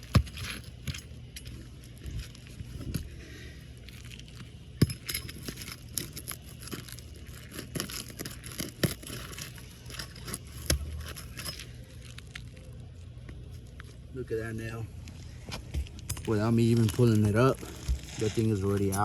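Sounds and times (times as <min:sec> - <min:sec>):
roof shingles tearing and scraping: 0:01.9 - 0:12.8, 0:16.3 - 0:19.0.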